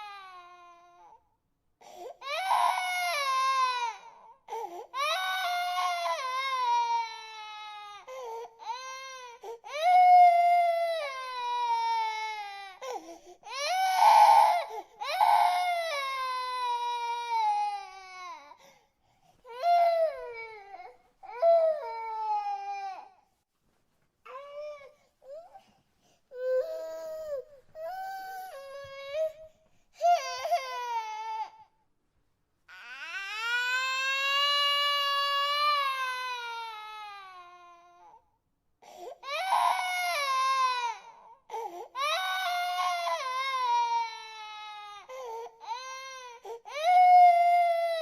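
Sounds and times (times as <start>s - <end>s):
baby crying: 2.2s - 18.6s, 19.5s - 23.2s, 30.0s - 31.7s, 32.7s - 38.2s, 39.2s - 48.0s.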